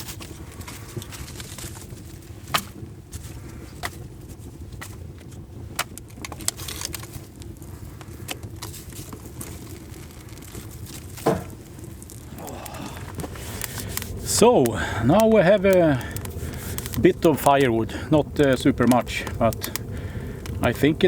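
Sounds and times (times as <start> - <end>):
wood snapping and cracking: 0.0 - 21.0
dull knock: 11.3 - 11.5
low rumble: 11.4 - 21.0.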